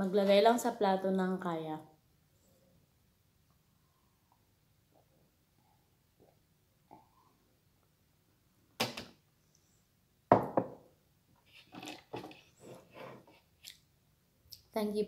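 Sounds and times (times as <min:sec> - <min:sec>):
knocks on a hard surface: 0:10.3 - 0:10.8.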